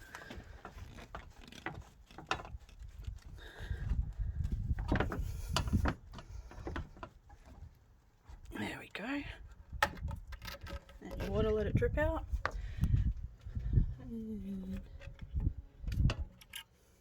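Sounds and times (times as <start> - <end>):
rubber hose rubbing and knocking: 0.0 - 8.5.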